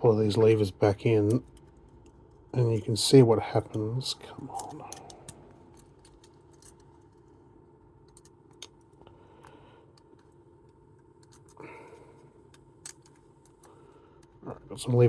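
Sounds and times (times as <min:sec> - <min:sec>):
small metal clicks: 0:04.6 - 0:07.3, 0:08.0 - 0:11.6, 0:12.5 - 0:14.4.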